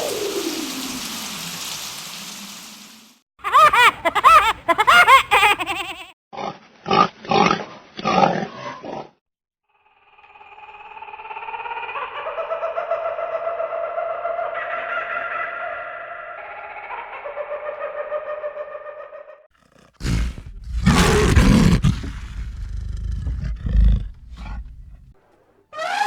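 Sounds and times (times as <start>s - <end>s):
wash of noise: 0.0s - 3.1s
squealing calls rising and falling: 3.4s - 6.0s
short harsh grunts: 19.9s - 25.2s.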